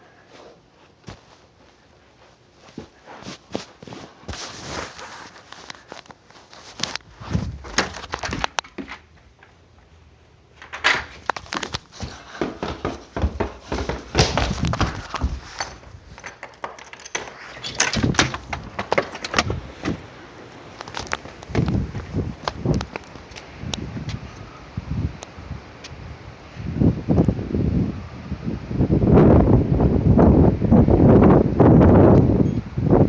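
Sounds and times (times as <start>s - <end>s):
footsteps: 0.3s - 9.6s, 10.6s - 23.5s
knocks and clatter: 10.6s - 20.1s.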